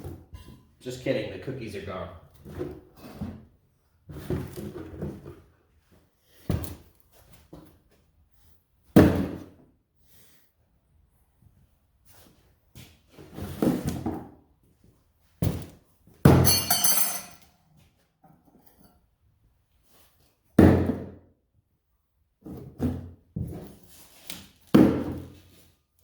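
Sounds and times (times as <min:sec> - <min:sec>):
bright metallic ring: 0:16.5 - 0:17.4.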